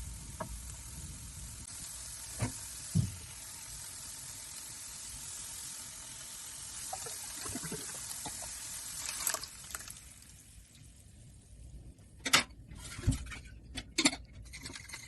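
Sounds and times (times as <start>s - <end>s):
food sizzling in a frying pan: 0.0s - 11.2s.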